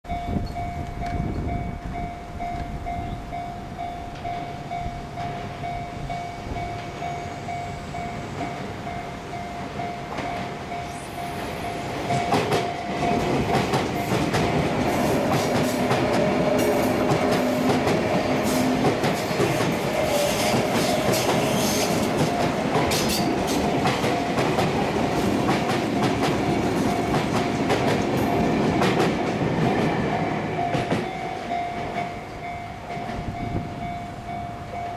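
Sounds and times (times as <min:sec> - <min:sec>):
electric train passing: 0:00.1 - 0:34.9
level crossing warning bell: 0:00.1 - 0:34.9
train wheels knocking on rail joints: 0:11.3 - 0:33.8.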